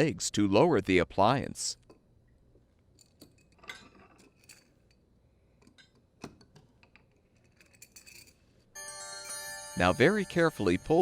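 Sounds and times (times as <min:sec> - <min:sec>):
bright ringing chime: 0:08.8 - 0:11.0.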